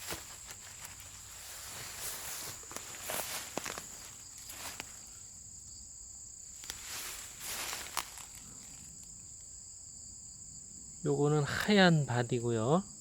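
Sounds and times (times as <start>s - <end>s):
footsteps through grass: 0.0s - 5.3s, 6.5s - 9.0s
insects chirring: 0.0s - 13.0s.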